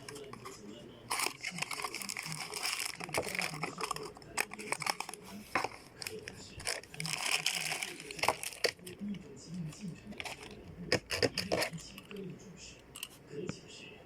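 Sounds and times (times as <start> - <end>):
packaging crinkling and clicking: 1.1 - 12.2.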